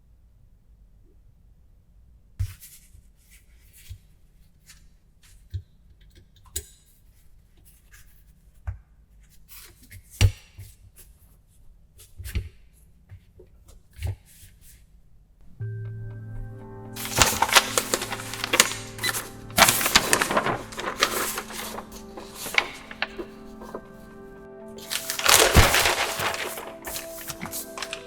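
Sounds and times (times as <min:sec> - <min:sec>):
rustling and rubbing: 0:17.0 - 0:24.0, 0:24.8 - 0:28.0.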